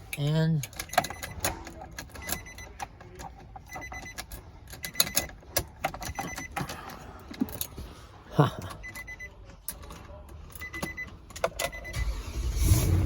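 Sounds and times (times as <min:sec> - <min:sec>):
faint high beep: 0:08.8 - 0:09.3, 0:10.6 - 0:12.2.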